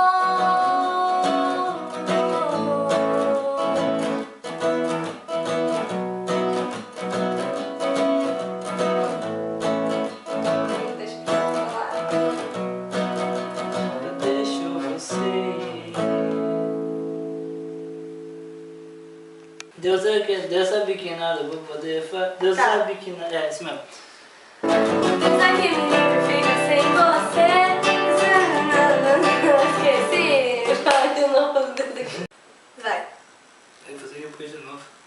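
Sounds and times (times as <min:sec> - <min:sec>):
acoustic guitar strummed: 0:00.0 - 0:19.8, 0:24.6 - 0:31.0.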